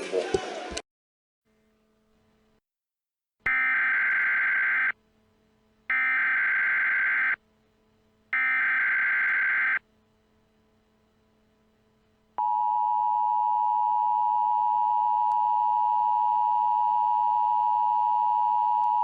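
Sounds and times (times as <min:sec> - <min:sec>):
buzzy data tones: 0:03.5 - 0:05.0, 0:05.9 - 0:07.4, 0:08.4 - 0:09.8.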